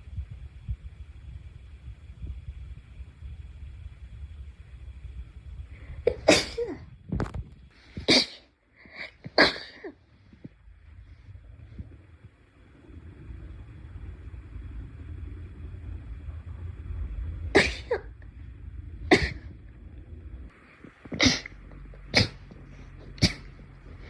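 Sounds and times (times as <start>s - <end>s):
low rumbling noise: 0.0s - 24.0s
person sneezing: 8.0s - 10.0s, 21.1s - 22.5s, 23.2s - 23.6s.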